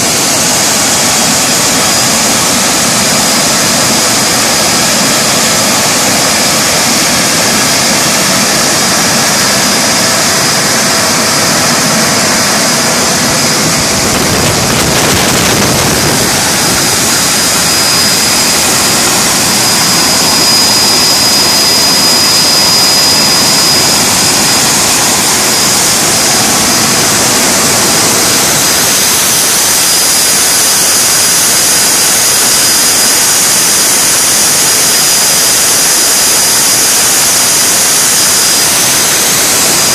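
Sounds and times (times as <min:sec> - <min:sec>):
compressor rushing: 0:00.0 - 0:39.9
high whistle: 0:16.0 - 0:27.0.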